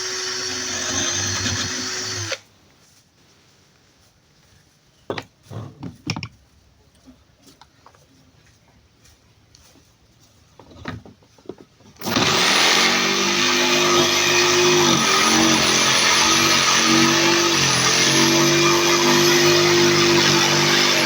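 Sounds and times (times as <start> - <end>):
electric power tool whining: 0.0 - 2.4, 12.0 - 21.0.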